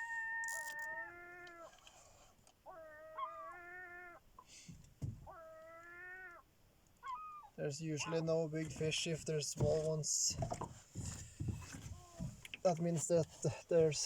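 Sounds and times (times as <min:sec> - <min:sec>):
gull mewing calls: 0:00.0 - 0:01.7, 0:02.6 - 0:04.2, 0:05.2 - 0:08.2.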